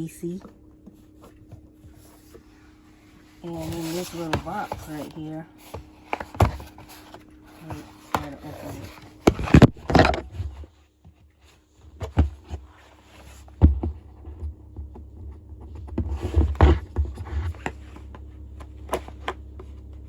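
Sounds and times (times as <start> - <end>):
steady low hum: 0.0 - 20.0
knife scraping cardboard: 3.4 - 10.6.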